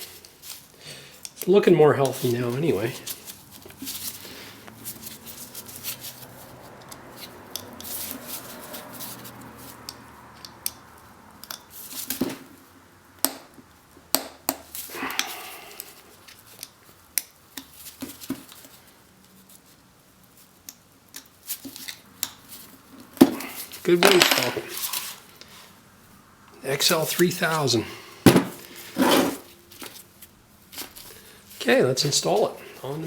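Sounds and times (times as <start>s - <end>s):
metal parts clicking and clinking: 23.7s - 25.2s.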